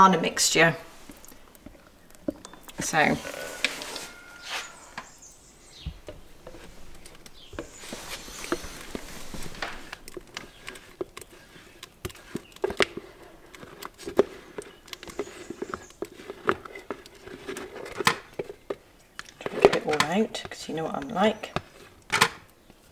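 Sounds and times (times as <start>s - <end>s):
utensil scraping and tapping: 5.8s - 21.9s.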